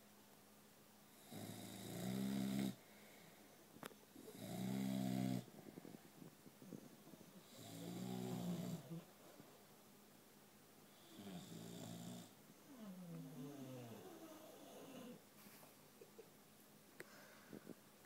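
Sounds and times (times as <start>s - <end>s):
dog snoring: 1.1s - 2.8s, 4.2s - 5.5s, 7.4s - 9.1s, 11.0s - 15.2s.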